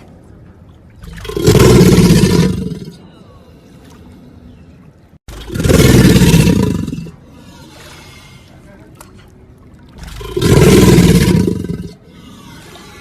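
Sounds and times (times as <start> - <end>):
deep crocodilian roars: 1.0 - 3.0, 5.3 - 7.8, 10.0 - 13.0.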